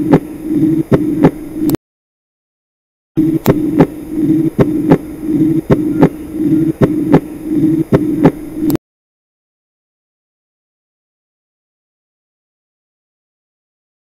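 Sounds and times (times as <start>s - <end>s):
blowing heart murmur: 0.0s - 1.7s, 3.2s - 8.8s
heartbeat lub-dub: 0.0s - 1.8s, 3.2s - 8.8s.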